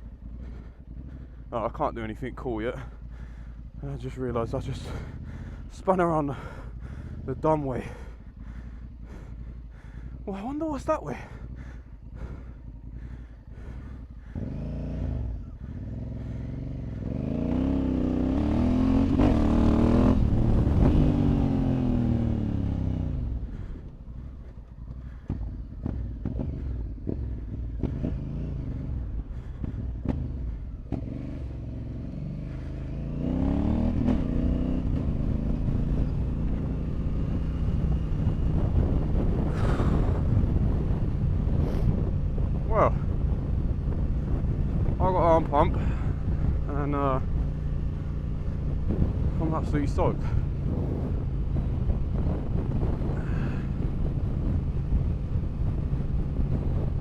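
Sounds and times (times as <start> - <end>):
motorcycle engine revving: 0.0 - 57.0
wind noise: 37.3 - 47.5, 48.4 - 57.0.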